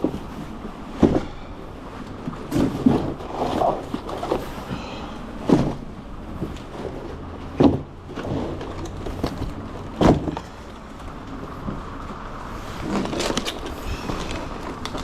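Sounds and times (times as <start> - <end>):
heavy thuds of cases: 0.0 - 1.6, 2.2 - 10.6
steady low hum: 0.0 - 15.0.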